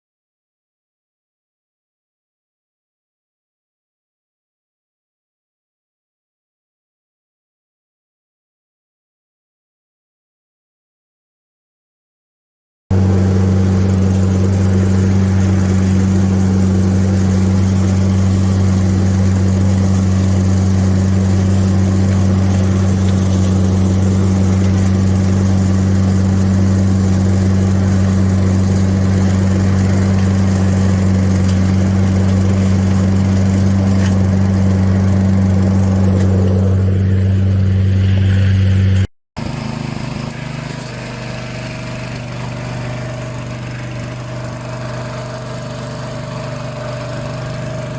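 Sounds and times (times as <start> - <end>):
pressure washer engine drone: 12.9 - 47.9.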